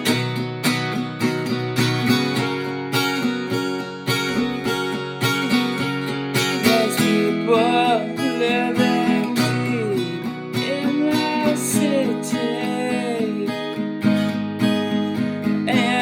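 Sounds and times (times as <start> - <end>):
acoustic guitar strumming: 0.0 - 16.0.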